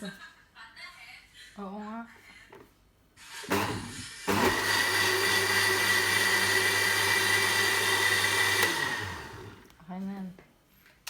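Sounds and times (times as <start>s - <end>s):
blender motor whining: 3.4s - 9.7s.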